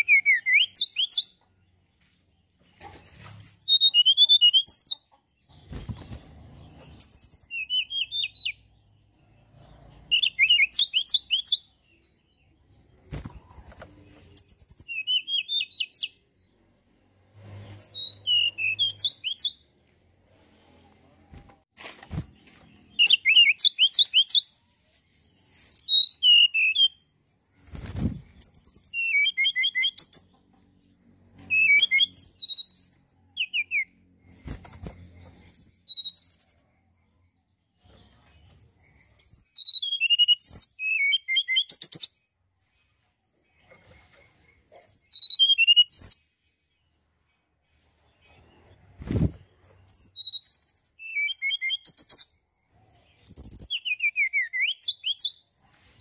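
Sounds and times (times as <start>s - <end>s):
bird singing warbling trills: 28.2s - 37.4s, 49.8s - 55.4s.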